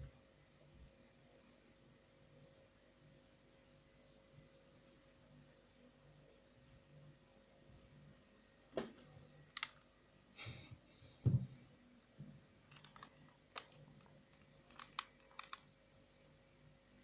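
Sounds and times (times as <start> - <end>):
dull knock: 11.2 - 11.5
small parts and tools clicking: 12.7 - 15.7.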